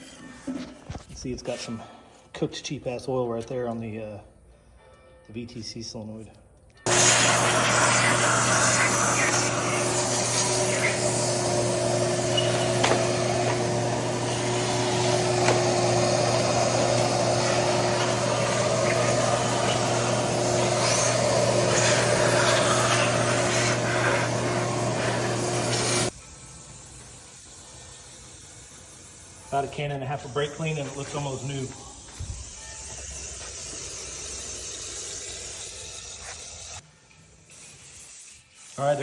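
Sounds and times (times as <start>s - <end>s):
aerosol spray hissing: 6.9s - 26.4s, 30.2s - 36.8s.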